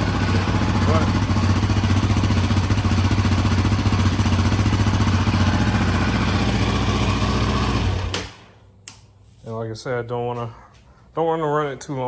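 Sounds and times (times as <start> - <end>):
engine idling: 0.0 - 8.2.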